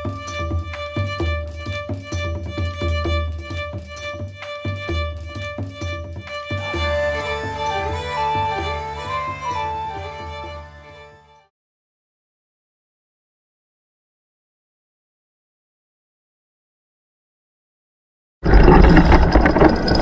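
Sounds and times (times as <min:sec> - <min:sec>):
even beat: 0:00.0 - 0:10.9
moving melody: 0:00.0 - 0:11.5
sustained tones: 0:06.5 - 0:11.2.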